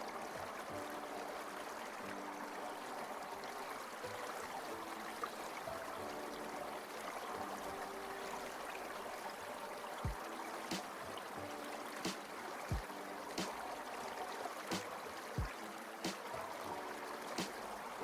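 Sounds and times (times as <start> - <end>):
soft background music: 0.0 - 18.0
water stream trickling: 0.0 - 18.0.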